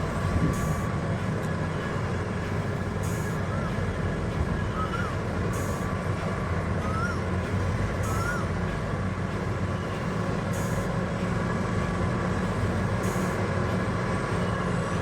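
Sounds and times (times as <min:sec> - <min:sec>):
deep diesel engine drone: 0:00.0 - 0:15.0.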